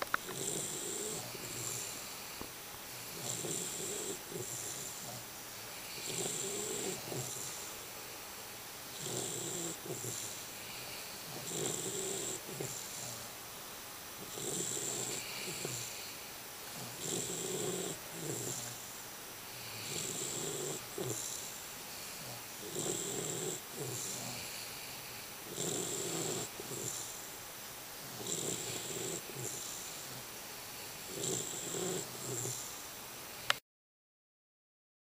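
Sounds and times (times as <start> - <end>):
person snoring: 0.2 - 2.4, 3.1 - 5.2, 5.8 - 7.7, 9.0 - 13.3, 14.2 - 18.9, 19.6 - 27.2, 28.0 - 30.3, 31.0 - 32.7.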